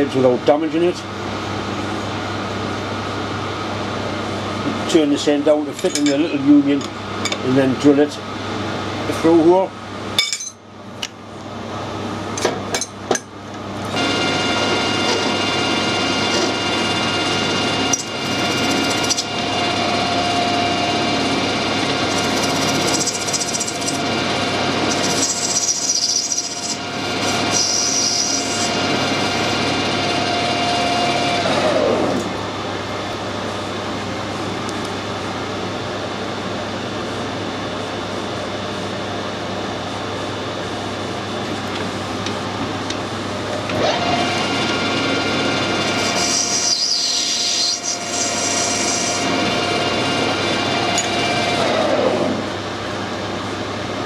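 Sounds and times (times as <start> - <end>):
metal lathe whining: 13.8 - 32.4, 43.4 - 52.6.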